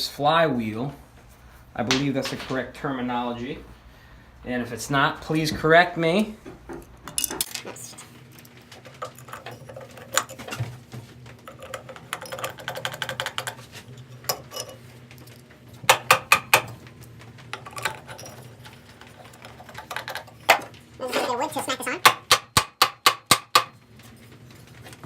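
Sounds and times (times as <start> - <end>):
small metal clicks and rattles: 7.1 - 10.6, 11.2 - 15.6, 16.9 - 21.8.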